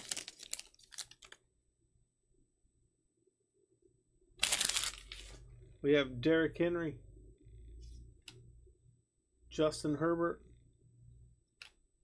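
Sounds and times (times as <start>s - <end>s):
foil pack crinkling: 0.0s - 1.4s, 4.4s - 5.4s.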